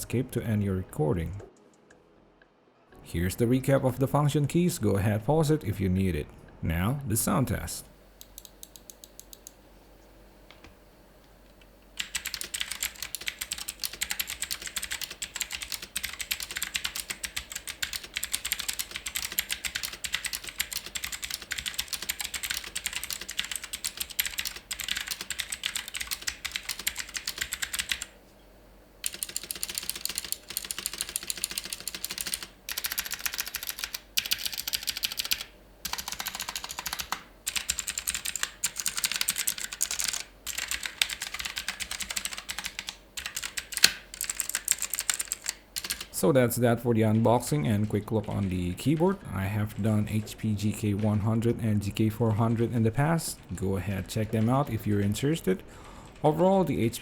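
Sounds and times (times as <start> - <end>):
mechanical keyboard typing: 8.2 - 9.6, 12.0 - 28.1, 29.0 - 46.2.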